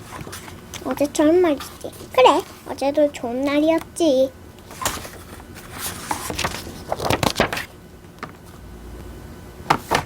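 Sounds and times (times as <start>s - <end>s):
paper page rustling: 0.0s - 2.7s, 4.7s - 8.6s.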